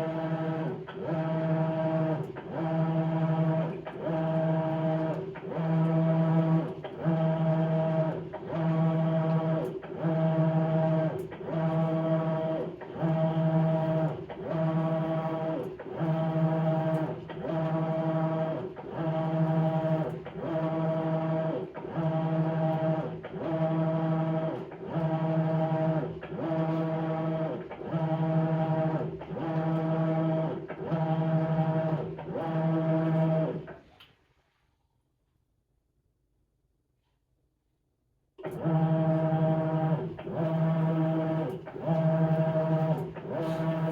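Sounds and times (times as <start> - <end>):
washing machine motor humming: 38.5 - 43.9.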